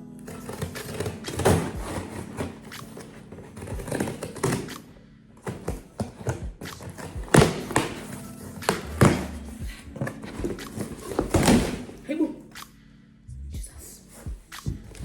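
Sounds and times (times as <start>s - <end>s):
packaging being handled: 0.2s - 12.0s.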